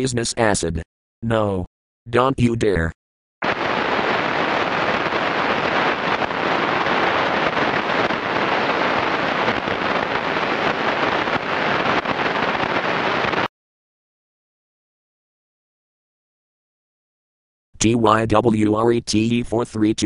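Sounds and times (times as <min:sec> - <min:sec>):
loud static hiss: 0:03.4 - 0:13.5.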